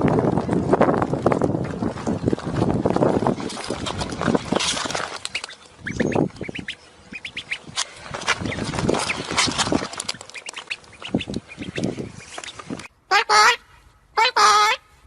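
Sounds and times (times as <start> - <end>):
birds harsh calls: 4.5 - 14.8
thin high bird peeps: 5.2 - 12.9.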